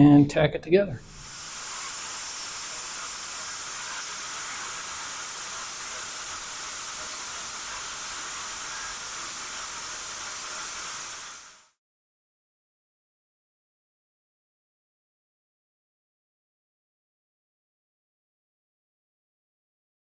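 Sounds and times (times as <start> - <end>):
welding torch flame hissing: 1.0 - 11.8.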